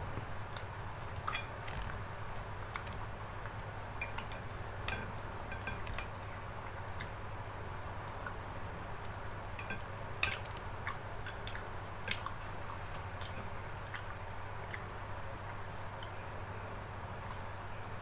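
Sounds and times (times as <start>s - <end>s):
steady low hum: 0.0s - 18.0s
person chewing food: 9.0s - 16.2s.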